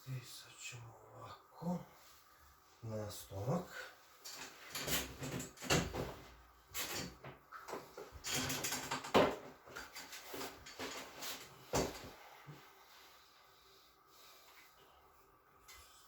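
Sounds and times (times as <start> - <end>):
treatment table creaks and knocks: 4.3 - 12.1.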